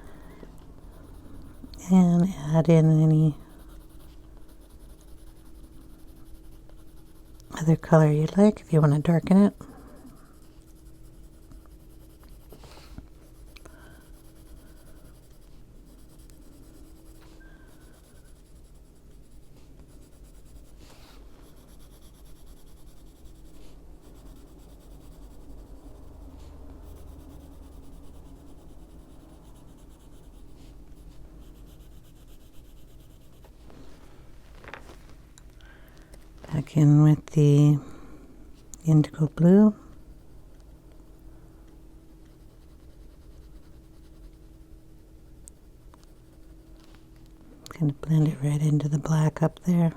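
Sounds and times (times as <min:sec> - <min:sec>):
low steady hum: 0:00.0 - 0:49.9
coloured pencil rubbing on paper: 0:00.8 - 0:33.6, 0:42.2 - 0:44.8, 0:45.6 - 0:46.7.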